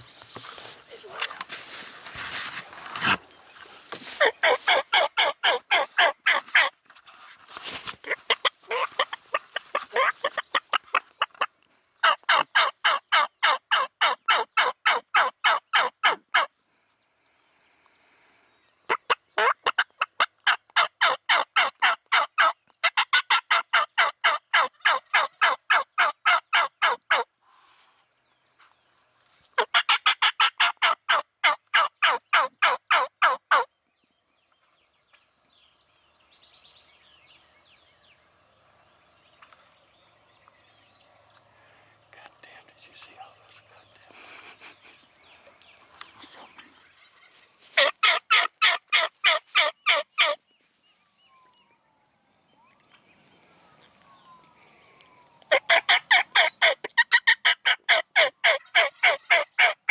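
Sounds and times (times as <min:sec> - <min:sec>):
turkey yelping: 0:04.2 - 0:06.7, 0:08.1 - 0:16.5, 0:18.9 - 0:27.2, 0:29.6 - 0:33.7, 0:47.8 - 0:50.4, 0:55.5 - 0:59.9.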